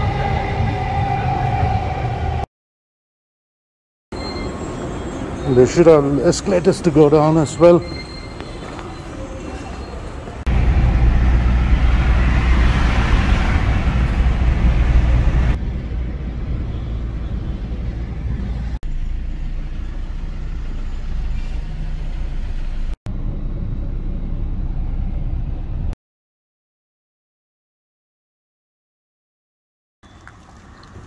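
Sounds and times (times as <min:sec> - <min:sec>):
vehicle rumble: 0:04.2 - 0:26.0.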